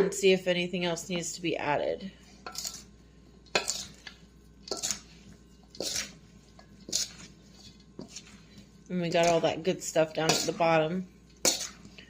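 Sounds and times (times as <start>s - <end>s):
spoon scraping and knocking bowl: 3.5s - 10.8s, 11.4s - 12.0s.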